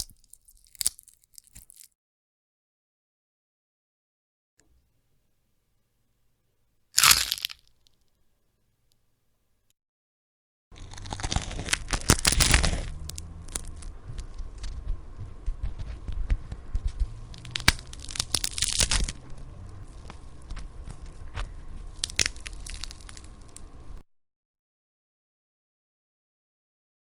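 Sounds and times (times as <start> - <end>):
bones cracking and crunching: 0.0 - 1.9, 7.0 - 7.7, 10.8 - 14.9, 15.5 - 23.8
low rumble: 10.8 - 24.0.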